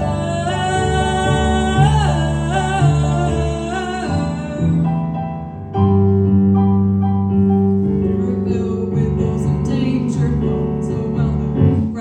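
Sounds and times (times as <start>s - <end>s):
person singing with vibrato: 0.0s - 5.3s
piano chords: 0.0s - 12.0s.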